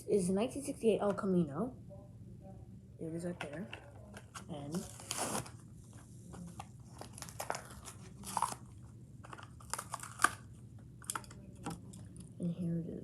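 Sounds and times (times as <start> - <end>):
plastic packaging crunching and tearing: 4.6 - 5.5, 6.9 - 10.5.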